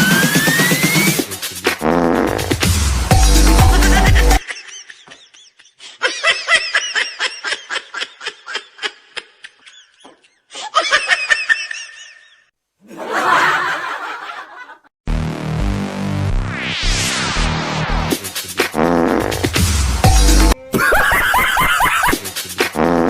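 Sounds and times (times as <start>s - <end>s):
electronic music: 0.0s - 4.4s.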